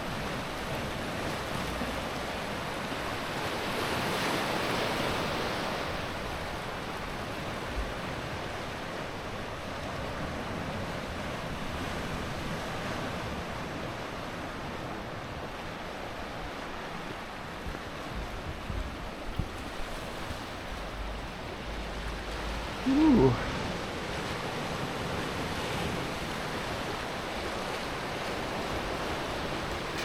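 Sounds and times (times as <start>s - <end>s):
surf breaking and washing: 0.0s - 30.0s
low wind rumble on microphone: 17.4s - 30.0s.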